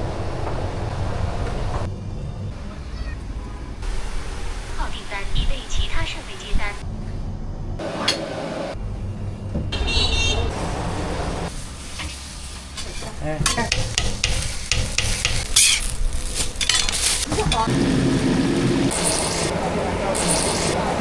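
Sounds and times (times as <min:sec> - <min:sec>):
utensils scraping pans: 0:12.8 - 0:17.7
food sizzling in hot oil: 0:13.5 - 0:19.5.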